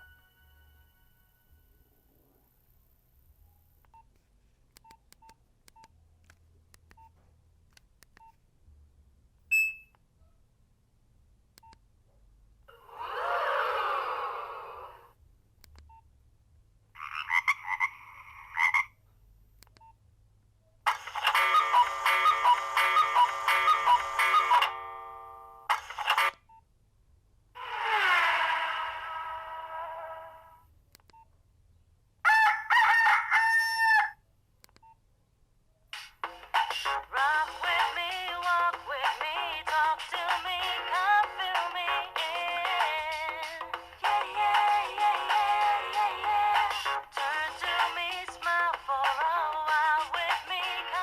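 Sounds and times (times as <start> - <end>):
keypad beeps: 9.5 - 10.0
melodic ringtone: 21.0 - 25.7
rooster-crow ringtone: 32.3 - 34.2.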